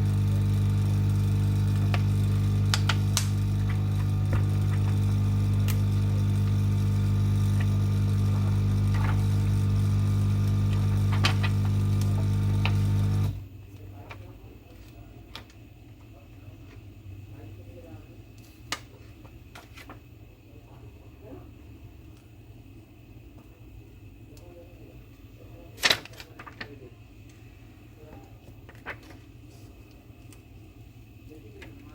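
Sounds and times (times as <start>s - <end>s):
hot-air tool blowing with low hum: 0.0s - 25.8s, 26.8s - 31.9s.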